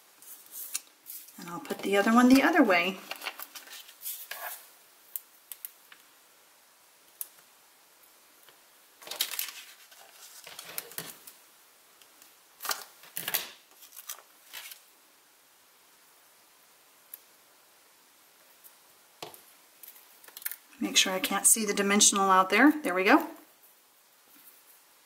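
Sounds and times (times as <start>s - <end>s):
paper rustling: 0.2s - 4.7s, 9.0s - 11.4s, 12.6s - 14.8s.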